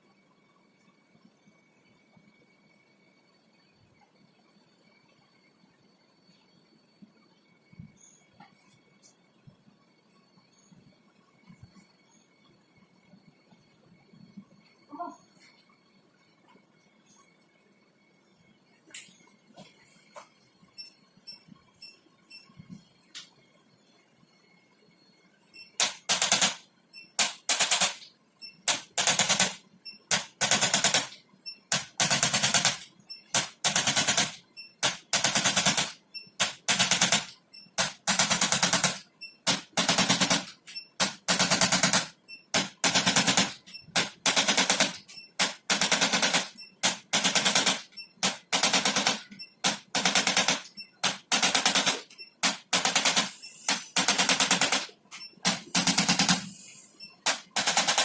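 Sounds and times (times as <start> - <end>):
electric percussion gun firing: 25.8 - 28.1, 28.7 - 56.6, 57.2 - 58.0.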